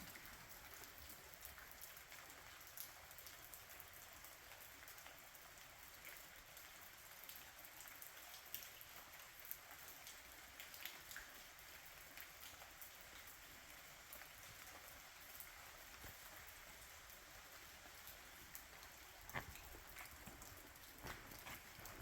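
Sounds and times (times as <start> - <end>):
light rain hissing: 0.0 - 22.0
raindrop ticks: 0.0 - 22.0.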